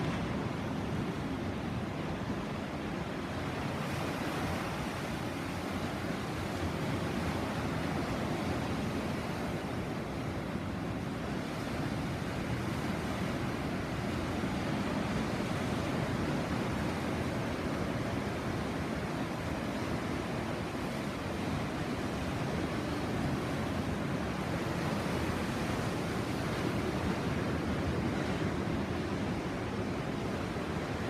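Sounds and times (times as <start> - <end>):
sea waves washing ashore: 0.0 - 31.0.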